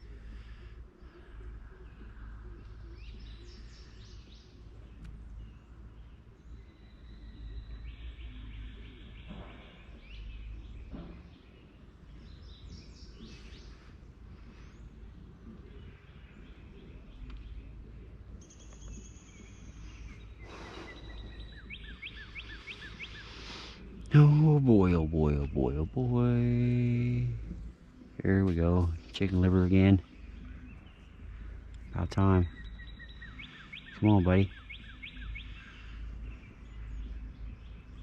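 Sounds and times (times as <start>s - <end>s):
birds chirping and trilling: 0.0s - 38.0s
steady low rumble: 21.0s - 38.0s.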